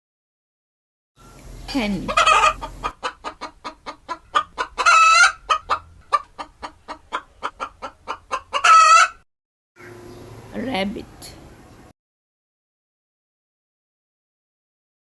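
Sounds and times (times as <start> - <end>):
hen clucking: 1.3 - 9.2
hen squawking: 1.7 - 9.2.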